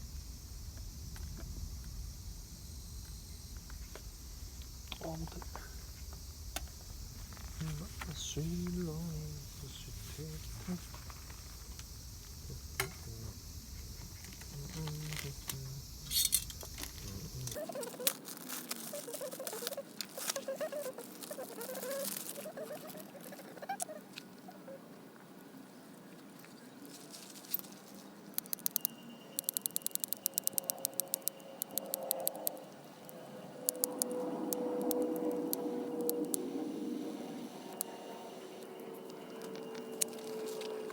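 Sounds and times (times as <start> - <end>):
wood fire crackling: 0.0 - 20.4
sharp clicks: 28.4 - 36.4.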